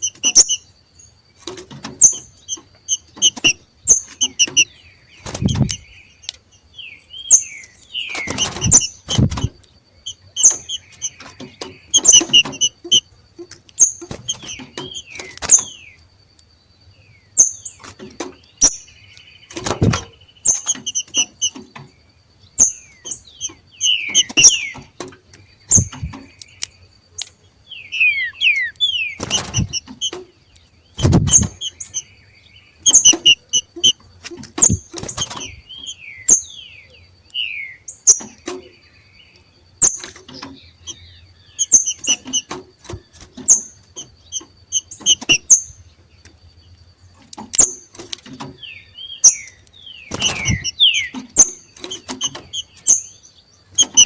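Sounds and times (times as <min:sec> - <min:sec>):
sharp high bird calls: 0:00.0 - 0:01.2, 0:01.8 - 0:13.1, 0:13.8 - 0:16.0, 0:18.5 - 0:21.7, 0:22.5 - 0:25.0, 0:25.6 - 0:34.0, 0:34.6 - 0:45.9, 0:48.5 - 0:54.0
loud thumps: 0:05.3 - 0:05.8, 0:08.3 - 0:09.6, 0:19.6 - 0:20.2, 0:25.7 - 0:26.3, 0:29.2 - 0:30.2, 0:31.0 - 0:31.8, 0:32.9 - 0:35.8.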